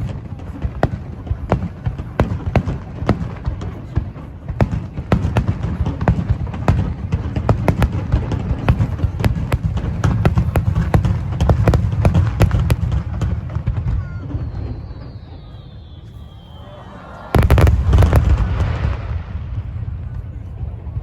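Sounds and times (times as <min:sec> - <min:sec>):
fireworks crackling bangs: 0:00.0 - 0:21.0
descending whistle: 0:13.9 - 0:18.1.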